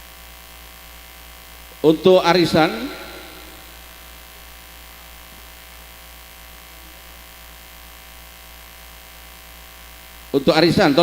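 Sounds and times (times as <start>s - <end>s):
electrical mains hum: 0.0s - 11.0s
faint amplifier hiss: 0.0s - 11.0s.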